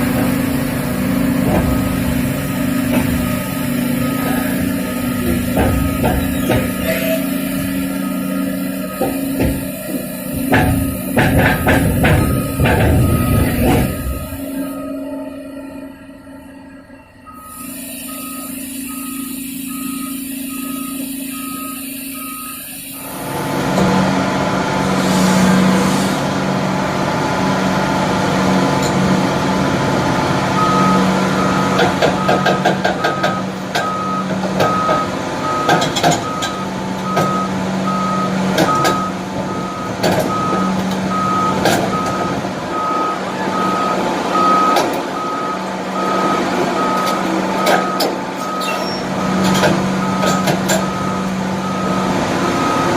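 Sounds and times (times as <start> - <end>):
heavy diesel engine under load: 0.0 - 52.9
travel alarm beeping: 2.8 - 10.1, 10.7 - 23.3, 30.6 - 52.9
metallic clanks and knocks: 5.2 - 6.9, 9.0 - 14.4, 35.6 - 37.4, 49.4 - 51.0.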